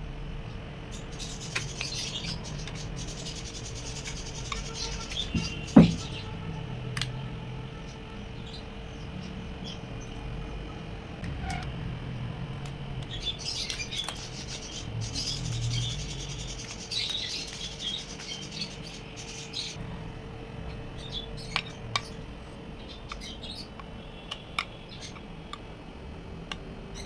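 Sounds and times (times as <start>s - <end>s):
faint steady hum: 0.0s - 27.0s
sharp taps: 5.3s - 6.2s.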